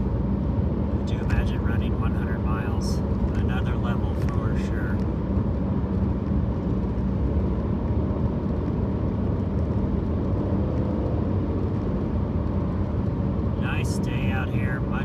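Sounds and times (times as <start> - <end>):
car driving on highway: 0.0 - 15.0.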